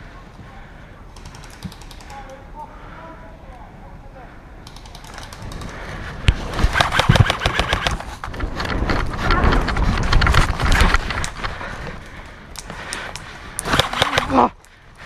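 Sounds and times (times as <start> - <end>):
airsoft guns firing: 6.4 - 8.2, 13.6 - 14.5.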